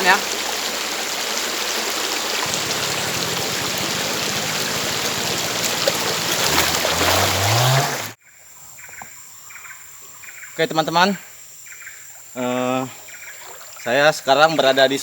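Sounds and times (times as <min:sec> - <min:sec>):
river water rushing: 0:00.0 - 0:08.2.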